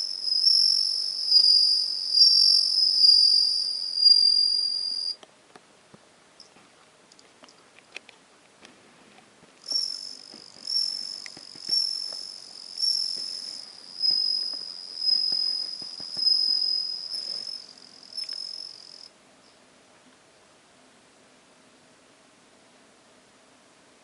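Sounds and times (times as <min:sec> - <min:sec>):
cricket high ringing trill: 0:00.0 - 0:05.2, 0:09.6 - 0:19.1.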